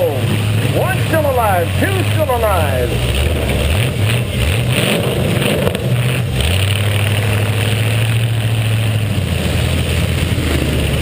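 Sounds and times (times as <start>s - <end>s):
car engine droning: 0.0s - 11.0s.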